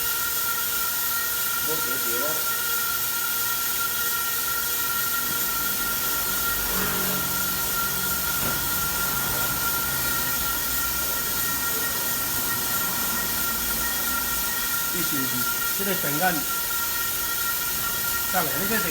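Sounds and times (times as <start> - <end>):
machine hiss: 1.6 - 18.9
high whine: 4.9 - 18.9.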